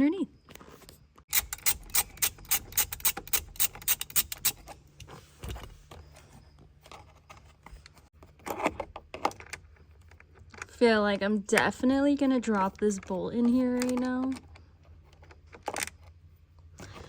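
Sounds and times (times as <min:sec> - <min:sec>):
ratchet wrench clicking: 0:01.3 - 0:04.8.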